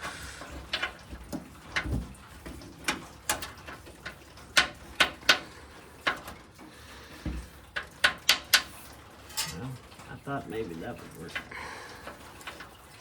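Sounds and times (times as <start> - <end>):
metal hardware clinking on frame: 9.3 - 9.9.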